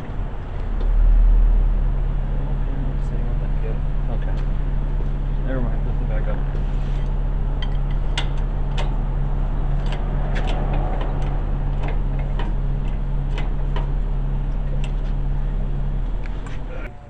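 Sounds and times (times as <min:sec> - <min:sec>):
steady mechanical hum: 0:00.0 - 0:17.0
sharp metallic clicks and knocks: 0:07.6 - 0:15.1.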